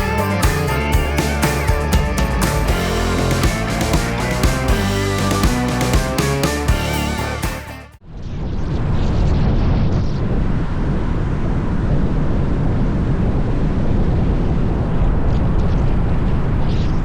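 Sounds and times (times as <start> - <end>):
loud low rumbling: 0.0 - 7.8.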